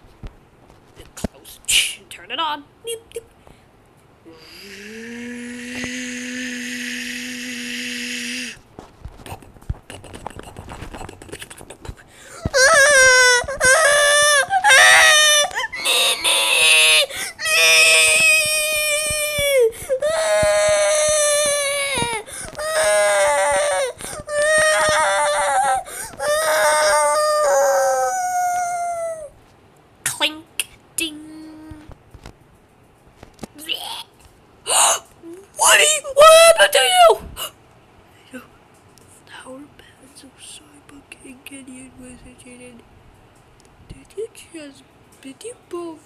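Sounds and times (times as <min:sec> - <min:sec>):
high voice wailing: 0:04.4 - 0:08.6, 0:12.4 - 0:29.3, 0:34.7 - 0:37.3
clicks and crackles: 0:31.7 - 0:33.6.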